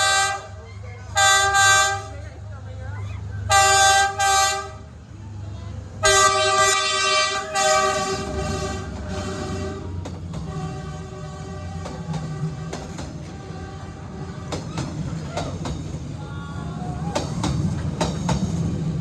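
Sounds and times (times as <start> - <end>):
train horn blasts: 0.0 - 0.6, 1.2 - 2.2, 3.5 - 4.9, 6.0 - 14.7
passing train rumble: 0.0 - 19.0.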